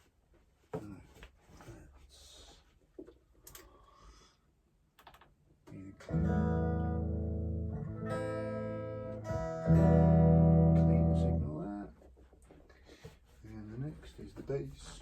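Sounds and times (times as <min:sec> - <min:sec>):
strummed guitar chord: 0:06.1 - 0:11.5.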